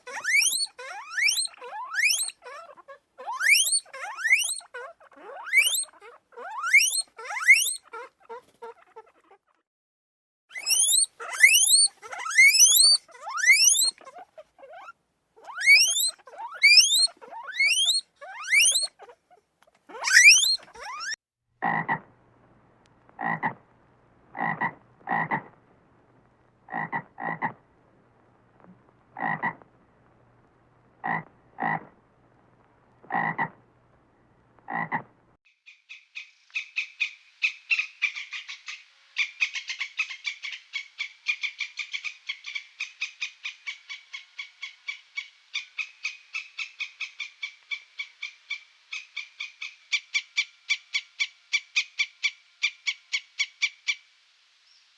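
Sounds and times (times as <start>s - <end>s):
frog croaking: 21.6s - 22.1s, 23.2s - 23.6s, 24.3s - 25.6s, 26.7s - 27.6s, 28.6s - 29.7s, 31.0s - 32.0s, 33.0s - 33.6s, 34.7s - 35.1s.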